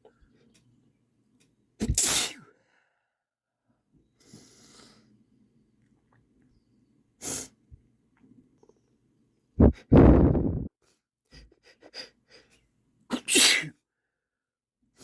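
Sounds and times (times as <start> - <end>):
person sneezing: 1.8 - 2.5, 13.1 - 13.8
sniffly breath in: 4.2 - 5.2.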